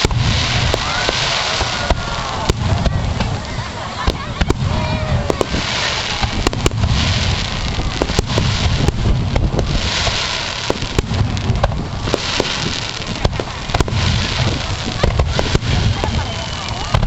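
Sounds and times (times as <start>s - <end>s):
crackling hiss: 0.0s - 17.0s
sharp firework cracks: 0.0s - 17.0s
low rumble: 6.2s - 17.0s.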